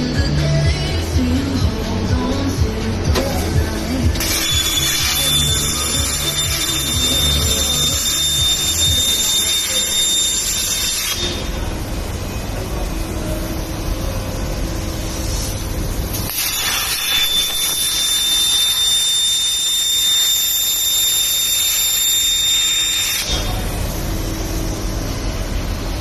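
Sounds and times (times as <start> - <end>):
low machinery rumble: 0.0 - 6.1
plasma torch hissing and whining: 0.4 - 12.0, 13.1 - 26.0.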